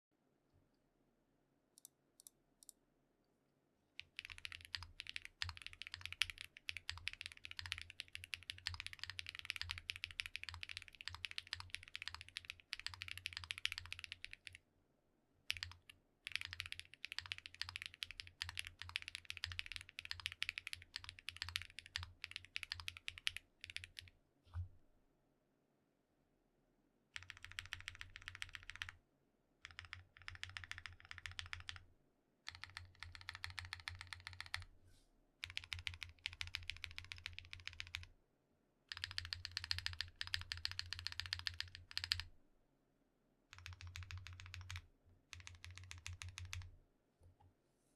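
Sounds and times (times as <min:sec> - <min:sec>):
mechanical keyboard typing: 0:04.0 - 0:14.6, 0:15.5 - 0:24.1, 0:27.2 - 0:29.0, 0:29.6 - 0:31.8, 0:32.5 - 0:34.7, 0:35.4 - 0:38.1, 0:38.9 - 0:42.3, 0:43.5 - 0:46.7.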